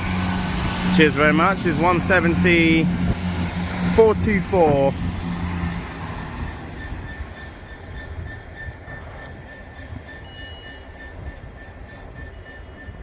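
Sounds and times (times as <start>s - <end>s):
diesel train running past: 0.0s - 13.0s
faint high-pitched beeps: 6.8s - 13.0s.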